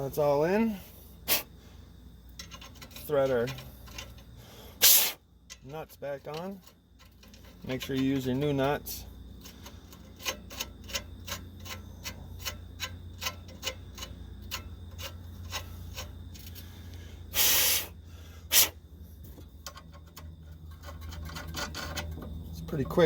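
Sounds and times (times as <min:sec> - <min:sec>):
ratchet clicking: 0:02.4 - 0:16.7, 0:19.5 - 0:22.4.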